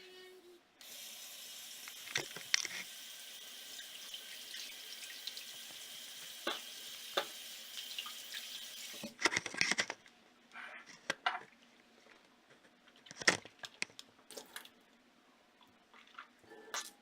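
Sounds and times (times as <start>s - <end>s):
water running from sink tap: 0.8s - 9.1s.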